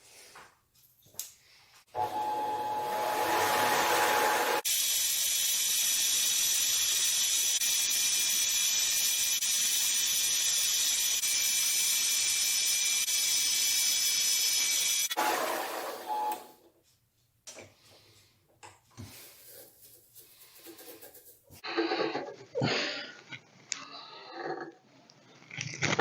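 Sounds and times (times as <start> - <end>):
lathe motor whine: 2.0 - 4.6.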